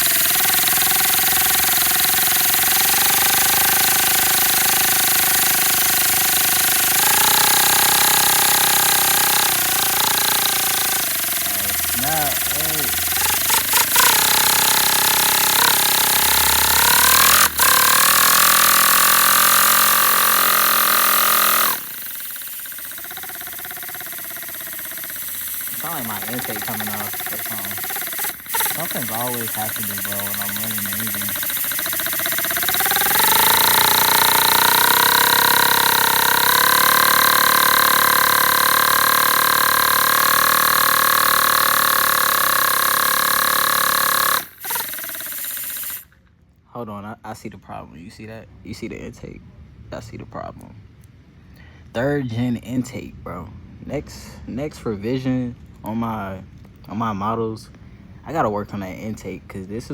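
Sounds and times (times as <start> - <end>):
air-driven engine humming: 0.0 - 46.1
fast rattle: 0.0 - 46.2.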